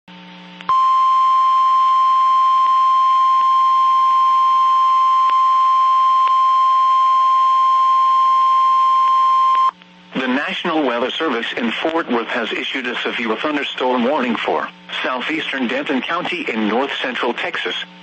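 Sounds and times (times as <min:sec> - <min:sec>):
steady alarm beep: 0:00.7 - 0:09.8.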